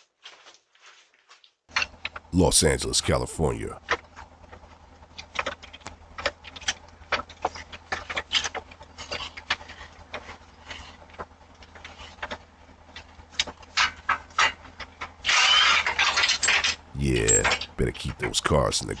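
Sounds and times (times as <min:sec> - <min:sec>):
faint low hum: 0:02.4 - 0:03.8, 0:16.9 - 0:19.0.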